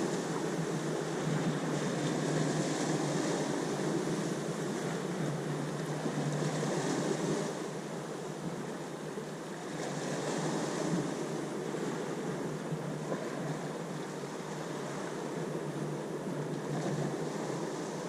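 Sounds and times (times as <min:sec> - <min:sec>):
ocean waves washing ashore: 0:00.0 - 0:18.0.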